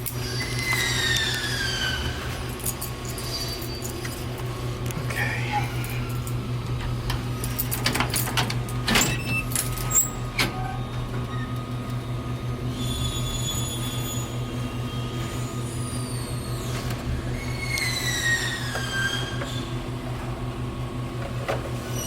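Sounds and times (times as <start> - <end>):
factory machinery humming: 0.0 - 22.0
high squealing tones: 0.2 - 2.4, 15.4 - 19.7.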